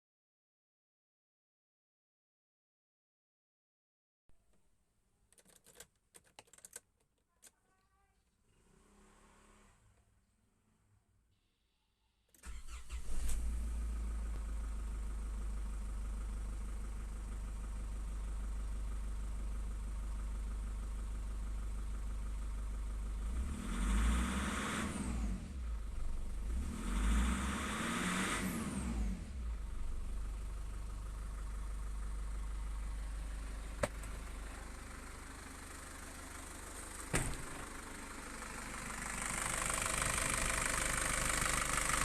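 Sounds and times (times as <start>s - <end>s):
diesel engine starting and idling: 8.5s - 9.9s, 12.4s - 42.0s
engine revving: 8.5s - 9.9s, 23.0s - 30.3s, 38.4s - 42.0s.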